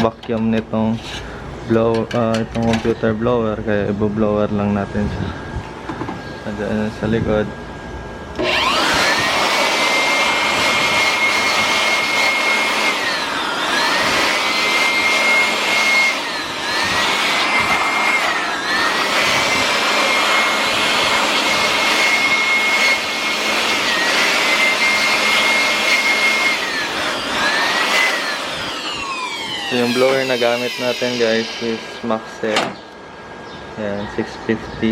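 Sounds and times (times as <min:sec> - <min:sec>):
electric blower motor whine: 0:04.9 - 0:33.3.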